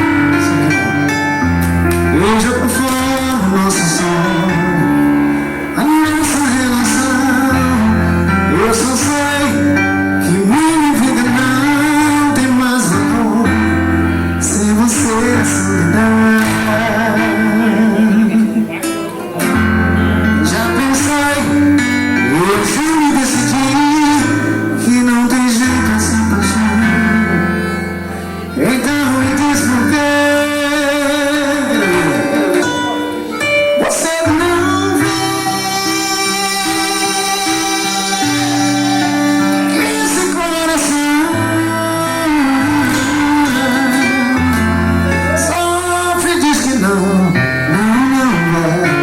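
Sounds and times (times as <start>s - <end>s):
band playing: 0.0s - 49.0s
person singing: 0.0s - 49.0s
percussion hits: 14.4s - 19.9s.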